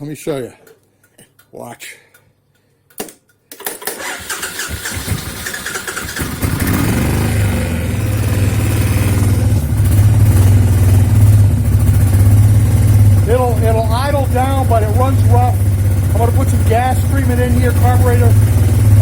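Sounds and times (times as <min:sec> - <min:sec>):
motorcycle engine starter cranking: 0:03.5 - 0:07.3
motorcycle engine idling rough: 0:04.8 - 0:19.0.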